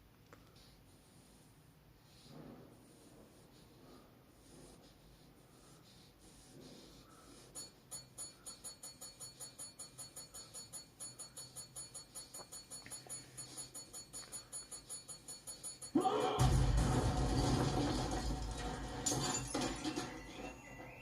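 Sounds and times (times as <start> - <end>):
tap bell dinging rapidly: 7.6 - 16.0.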